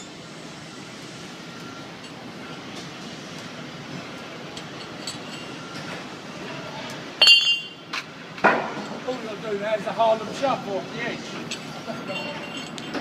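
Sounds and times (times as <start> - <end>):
distant traffic or machinery noise: 0.0 - 13.0.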